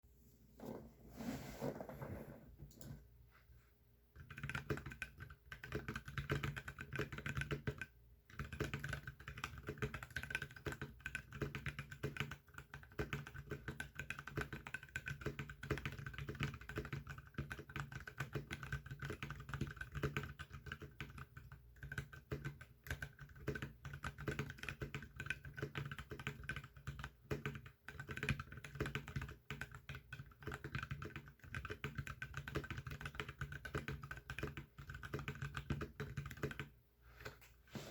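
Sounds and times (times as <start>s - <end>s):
fast typing on mechanical keyboard: 4.2s - 36.8s.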